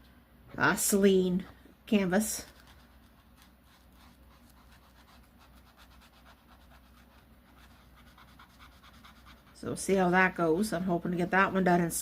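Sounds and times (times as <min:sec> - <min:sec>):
pen scratching on paper: 0:02.5 - 0:09.6.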